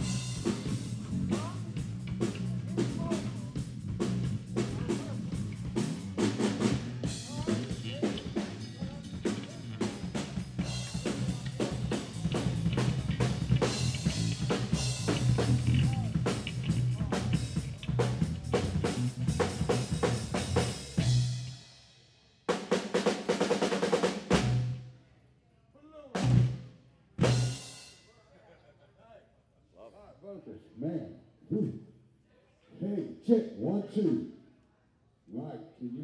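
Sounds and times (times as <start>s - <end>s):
drum kit playing: 0.0s - 24.8s, 26.2s - 28.0s
heavy drum hits: 9.2s - 21.5s.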